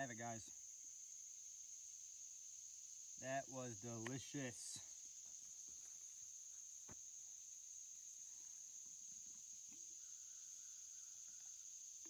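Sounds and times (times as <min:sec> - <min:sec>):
crickets trilling: 0:00.0 - 0:12.0.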